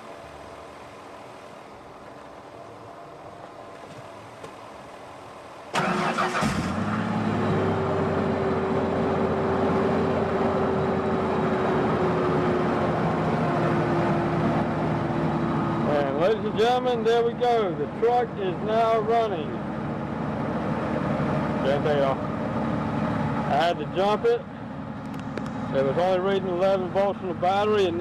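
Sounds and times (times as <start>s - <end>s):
car engine starting and idling: 5.7s - 28.0s
engine whine: 5.7s - 28.0s.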